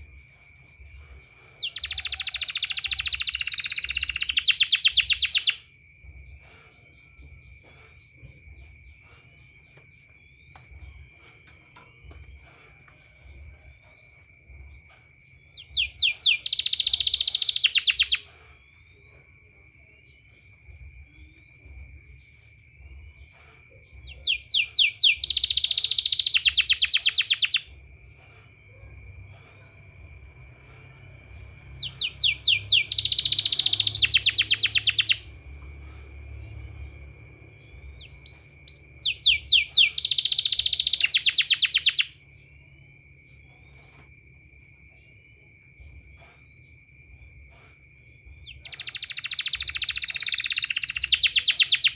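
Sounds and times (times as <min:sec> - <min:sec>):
faint rising chirps: 0:00.0 - 0:51.9
canary trilling: 0:01.2 - 0:05.6, 0:15.4 - 0:18.3, 0:23.2 - 0:27.7, 0:30.8 - 0:36.8, 0:37.6 - 0:42.2, 0:48.4 - 0:51.9.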